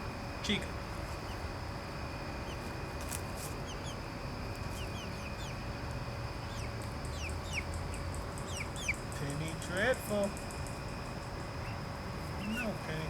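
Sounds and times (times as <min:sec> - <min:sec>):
chickens peeping and clucking: 0:02.2 - 0:09.6, 0:10.6 - 0:12.9.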